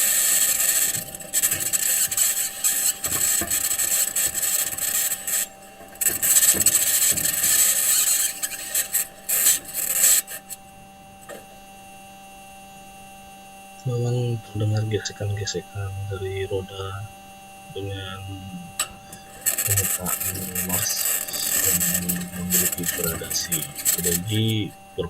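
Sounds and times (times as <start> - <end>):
metal wheels grinding on sand: 0.0 - 11.6, 17.8 - 25.0
steady electrical hum: 0.0 - 25.0.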